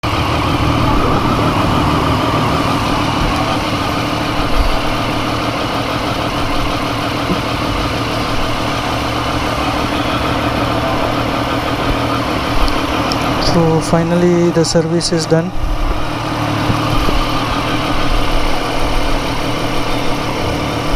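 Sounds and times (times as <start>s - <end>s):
motorcycle engine idling: 0.0s - 14.8s.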